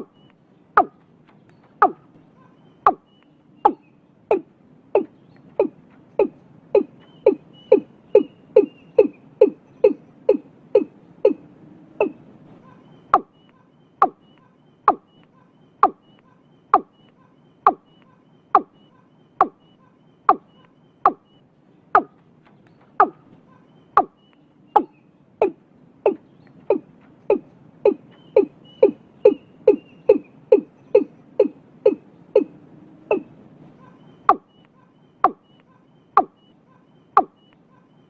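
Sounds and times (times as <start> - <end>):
bird calling short falling notes: 0.0 - 21.4.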